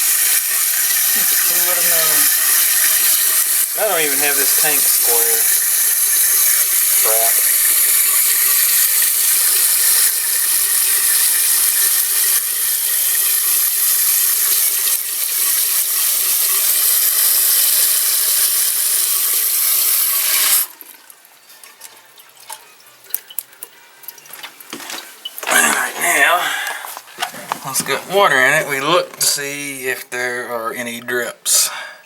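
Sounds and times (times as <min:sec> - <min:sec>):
faint ticks and drips: 0:00.0 - 0:25.4
toilet tank refilling: 0:00.0 - 0:29.6.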